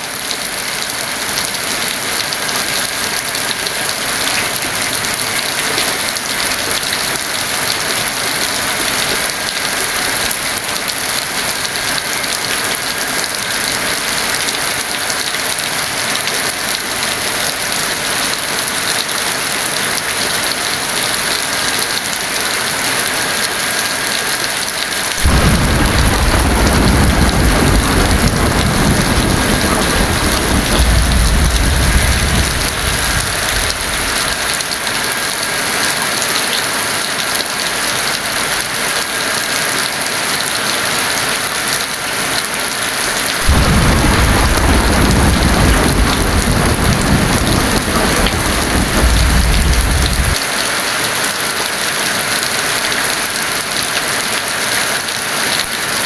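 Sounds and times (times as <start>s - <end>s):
heavy rain: 0.0s - 56.0s
thunder rumbling: 25.2s - 35.1s, 43.2s - 50.4s.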